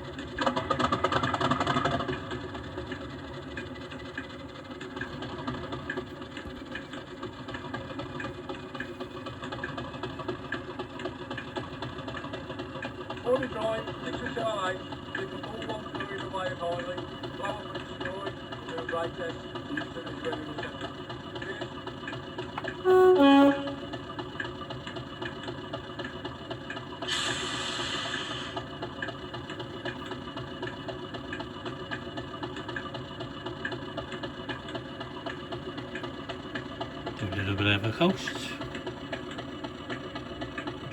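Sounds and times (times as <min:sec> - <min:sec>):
diesel engine idling through small speakers: 0:00.0 - 0:40.9
two-tone horn: 0:22.6 - 0:24.1.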